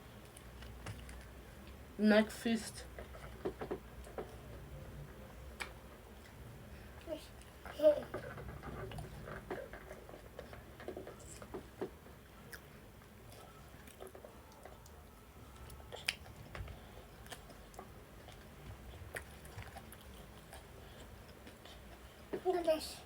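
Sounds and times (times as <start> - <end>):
person chewing food: 11.1 - 22.3.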